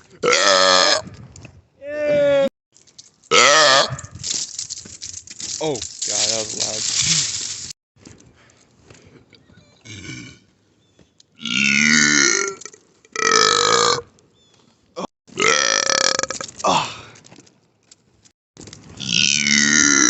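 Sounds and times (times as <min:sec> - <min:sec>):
men belching: 0:00.2 - 0:01.0, 0:03.3 - 0:03.9, 0:15.4 - 0:17.0, 0:19.1 - 0:20.0.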